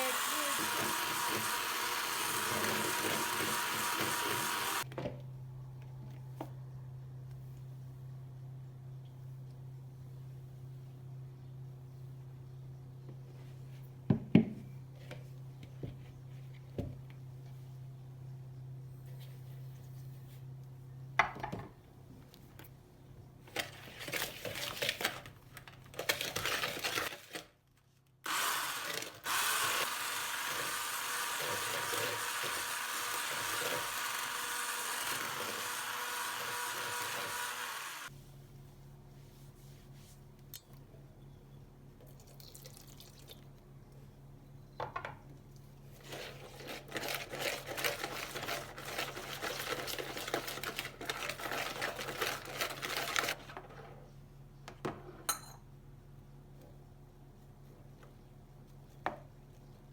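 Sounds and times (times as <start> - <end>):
steady appliance or water noise: 0.0 - 4.9, 28.3 - 38.1, 42.1 - 43.5.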